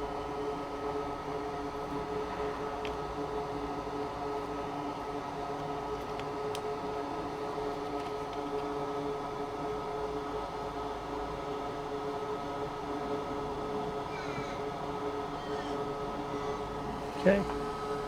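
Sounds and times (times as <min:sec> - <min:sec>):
electric fan humming: 0:10.2 - 0:18.0.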